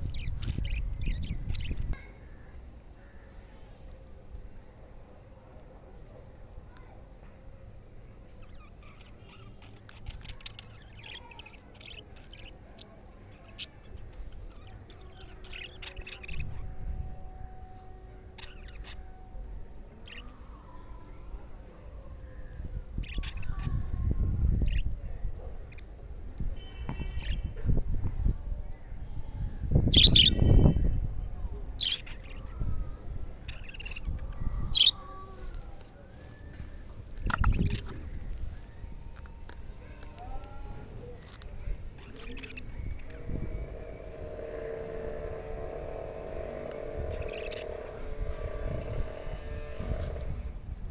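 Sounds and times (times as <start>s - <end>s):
low rumbling noise: 10.0s - 50.9s
low rumble: 36.7s - 50.9s
budgerigars chirping: 47.2s - 47.7s.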